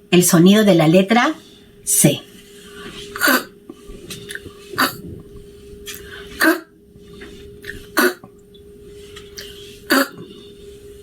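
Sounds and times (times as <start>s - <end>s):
person voicing cough-like k sound: 6.4s - 6.7s, 8.0s - 8.2s, 9.9s - 10.2s.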